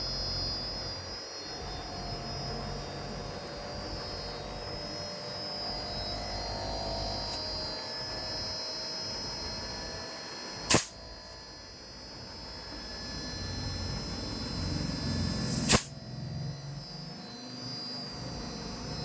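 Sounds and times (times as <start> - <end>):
faint high whine: 0.0 - 19.0
sharp click: 10.7 - 11.0, 15.5 - 16.0.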